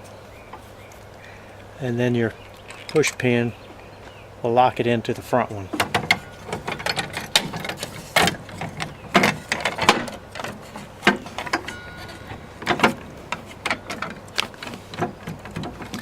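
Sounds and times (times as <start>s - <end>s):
metal and plastic parts clicking: 5.7s - 16.0s.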